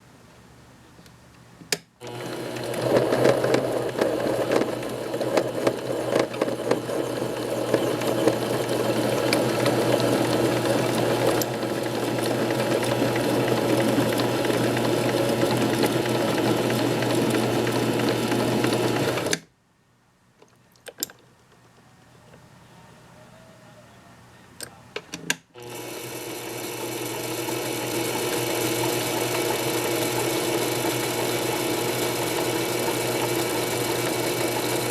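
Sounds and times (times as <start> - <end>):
lathe motor humming: 2.0 - 19.3, 25.6 - 34.9.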